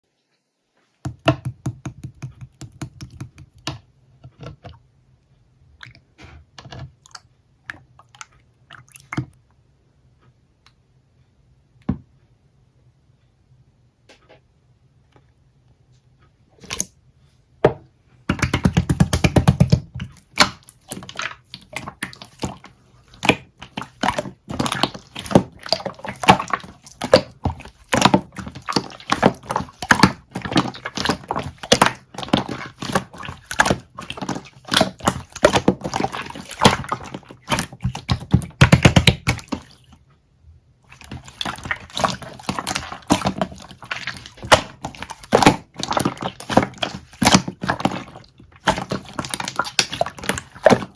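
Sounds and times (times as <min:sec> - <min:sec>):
slime squished by hand: 0:18.3 - 0:40.0, 0:40.9 - 0:50.9.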